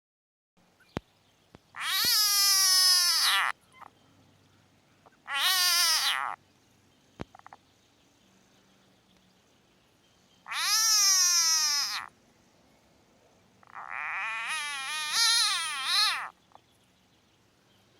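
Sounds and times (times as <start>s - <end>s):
frog squeaking in distress: 1.7s - 3.9s, 5.0s - 6.4s, 10.4s - 12.1s, 13.6s - 16.4s.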